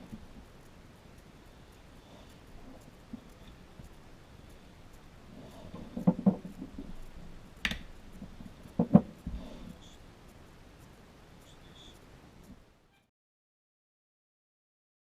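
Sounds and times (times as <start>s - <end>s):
sharp knocks and clicks: 5.4s - 9.5s.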